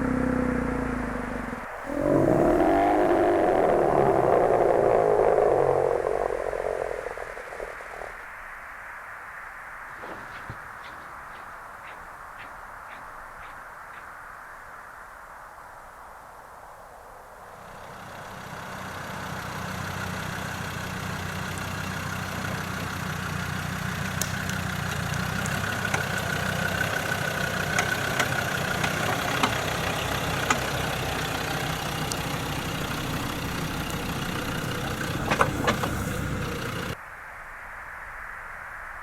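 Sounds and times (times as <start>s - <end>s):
engine running: 0.0s - 8.2s, 17.6s - 37.0s.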